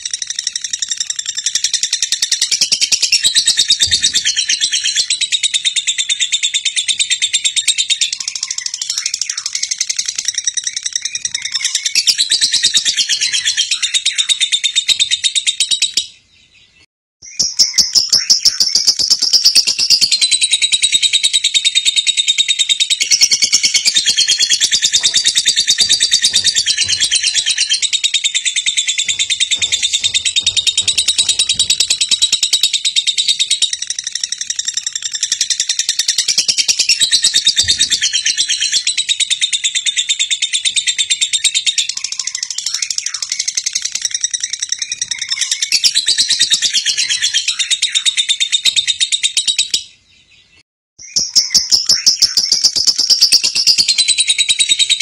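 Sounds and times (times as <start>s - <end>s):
high-pitched rapid chirping chorus: 17.2s - 49.6s.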